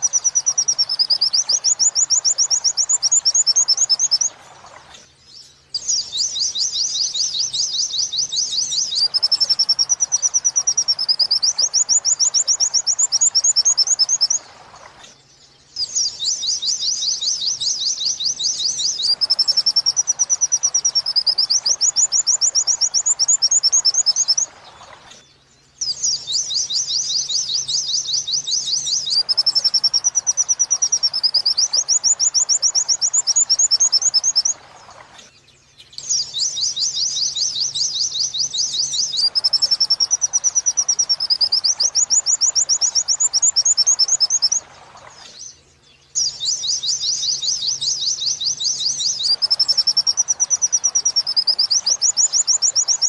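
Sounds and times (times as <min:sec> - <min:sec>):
bird trill and whistle: 0:00.0 - 0:04.4, 0:05.0 - 0:53.0.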